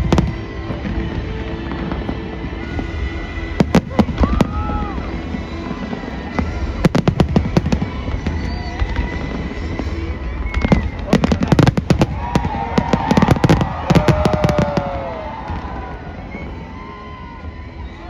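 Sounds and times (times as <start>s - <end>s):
fireworks bangs and crackles: 0.0s - 18.0s.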